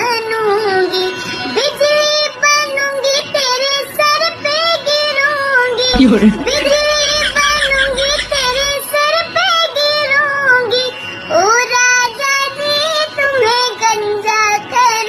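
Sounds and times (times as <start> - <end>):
high-pitched voice singing: 6.0 - 8.8
music: 6.0 - 9.2.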